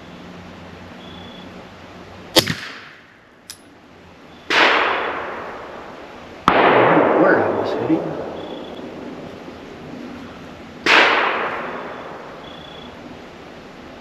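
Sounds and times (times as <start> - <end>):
gunshots with ringing decay: 2.4 - 3.1, 4.5 - 9.1, 10.8 - 12.4.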